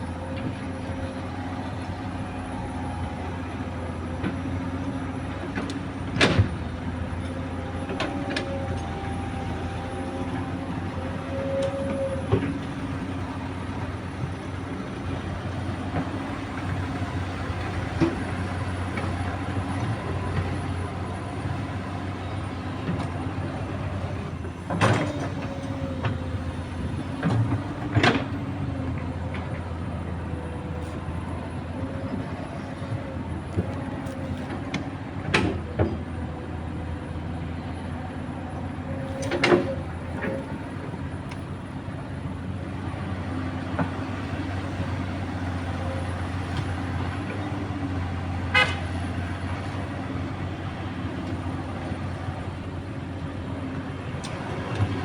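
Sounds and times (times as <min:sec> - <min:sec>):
excavator diesel engine drone: 0:00.0 - 0:55.0
excavator bucket clanking: 0:15.2 - 0:31.4.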